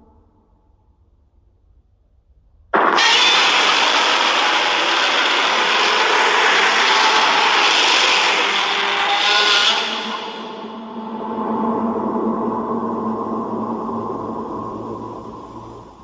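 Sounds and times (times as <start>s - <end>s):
harsh creature roar: 2.8s - 11.9s.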